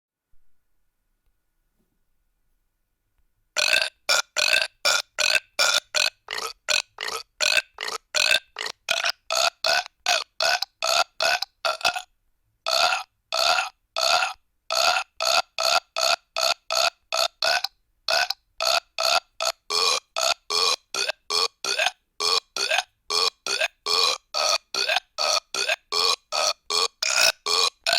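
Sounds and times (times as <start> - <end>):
short burps: 3.6 - 12.1, 12.7 - 15.4, 17.2 - 20.0, 20.6 - 27.9.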